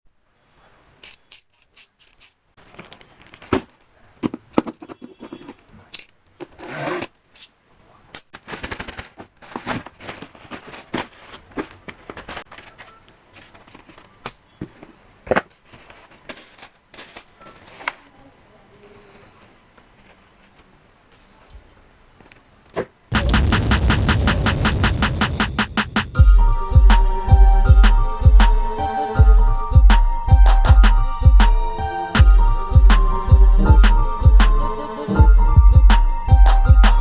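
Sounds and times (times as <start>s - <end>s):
packaging crinkling and tearing: 1.5s - 3.9s, 8.3s - 14.1s
sharp clicks and taps: 23.1s - 26.2s.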